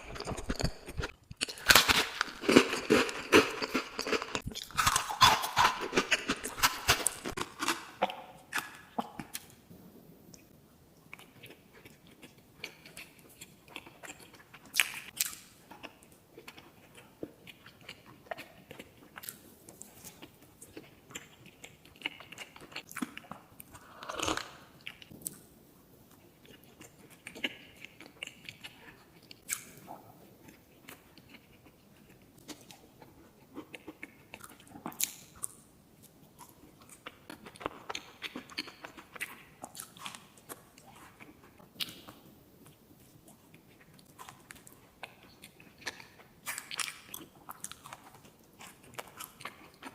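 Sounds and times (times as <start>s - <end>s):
sharp crunches and crackles: 0.0s - 7.8s
chewing sweets: 0.0s - 9.6s, 11.1s - 25.4s, 26.1s - 49.9s.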